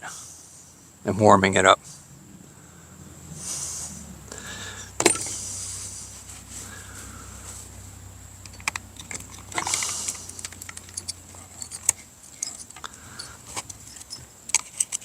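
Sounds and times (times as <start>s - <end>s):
tools clicking and rattling: 5.0s - 5.4s, 8.4s - 15.0s.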